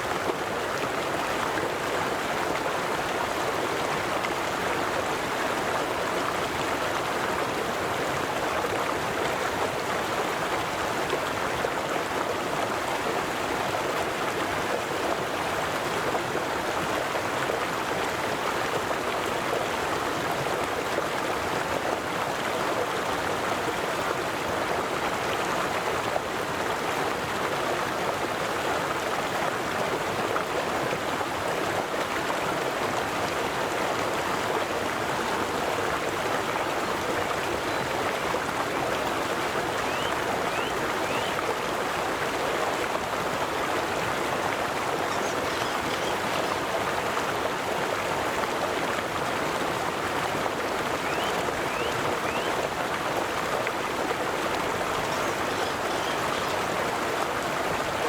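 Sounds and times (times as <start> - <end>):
river water flowing over stones: 0.0 - 58.0.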